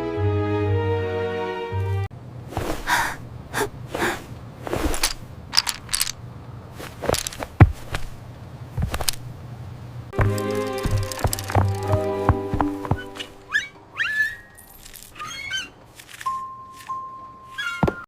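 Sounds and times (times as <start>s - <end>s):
background music: 0.0s - 2.1s, 10.2s - 14.0s
rustling swishes: 2.5s - 3.2s, 3.8s - 9.2s.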